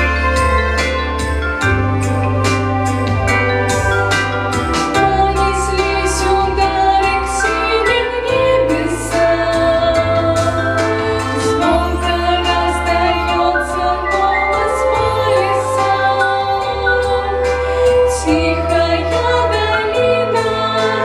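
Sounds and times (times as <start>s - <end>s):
instrumental accompaniment: 0.0s - 21.0s
long held bass notes: 0.0s - 21.0s
women singing slow song: 5.0s - 21.0s.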